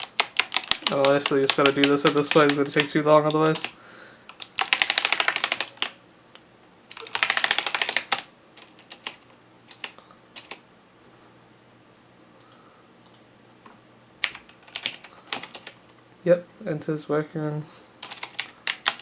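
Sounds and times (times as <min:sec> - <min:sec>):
clicky mechanical keyboard keystrokes: 0:00.0 - 0:06.0, 0:06.9 - 0:10.6, 0:14.2 - 0:15.8, 0:18.0 - 0:19.0.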